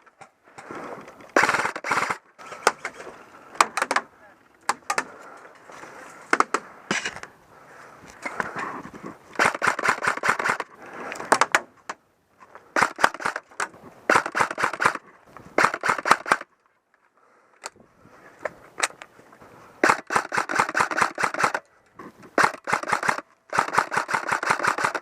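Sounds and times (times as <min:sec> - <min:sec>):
airsoft guns firing: 0:01.4 - 0:02.8, 0:09.4 - 0:10.7, 0:12.8 - 0:13.5, 0:14.1 - 0:15.0, 0:15.6 - 0:16.5, 0:19.8 - 0:21.6, 0:22.4 - 0:25.0.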